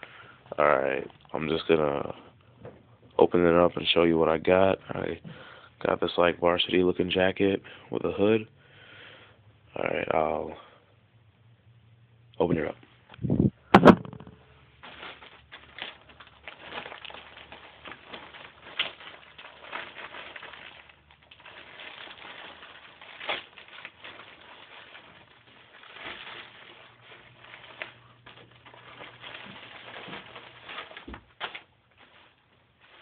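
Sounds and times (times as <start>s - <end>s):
cardboard and plastic rustling: 13.7s - 33.0s.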